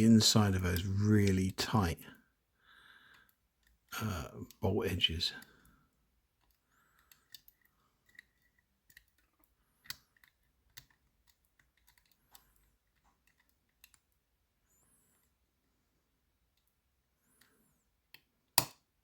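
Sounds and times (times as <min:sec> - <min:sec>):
lock pick clicking in lock: 0:06.4 - 0:14.1, 0:18.1 - 0:18.8.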